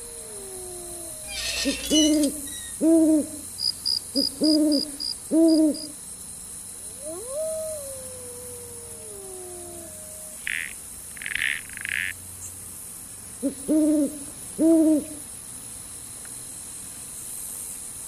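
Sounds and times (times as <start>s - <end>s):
long rising and falling call: 0.0s - 3.4s
owl hooting: 0.0s - 3.5s, 4.1s - 6.0s, 13.4s - 15.2s.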